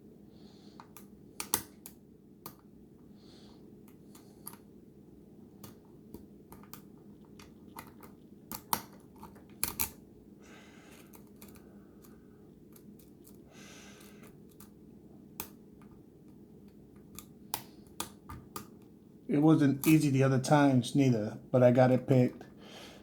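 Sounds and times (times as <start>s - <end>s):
faint hum: 0.0s - 23.0s
lock pick metallic clicks: 7.4s - 10.0s.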